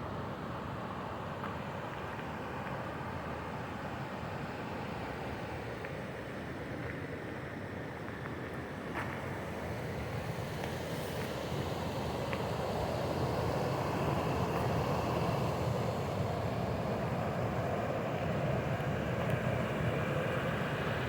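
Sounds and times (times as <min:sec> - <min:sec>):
creek water rushing: 0:08.8 - 0:21.0.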